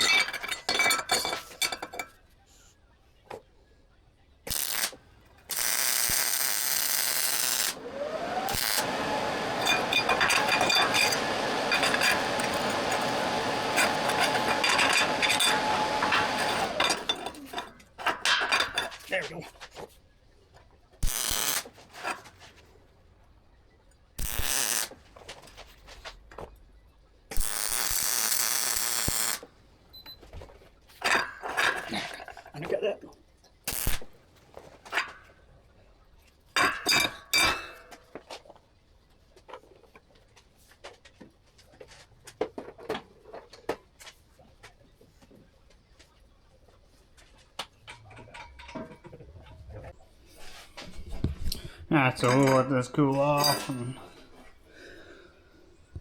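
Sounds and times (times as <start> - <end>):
welder arc hissing: 4.5 - 17.2, 21.0 - 21.7, 24.2 - 25.0, 27.4 - 29.5, 33.7 - 34.1
welder click: 4.5 - 17.7, 21.0 - 21.7, 24.2 - 25.0, 27.4 - 29.5, 33.7 - 34.1
tools clicking and tapping: 8.5 - 19.1.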